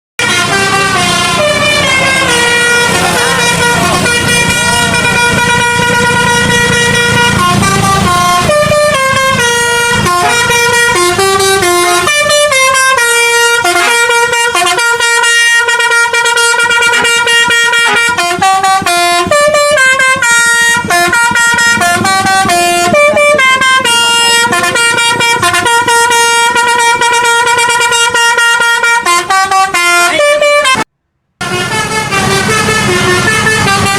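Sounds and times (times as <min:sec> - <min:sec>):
multi-tone air horn tunes: 0:00.2 - 0:33.9.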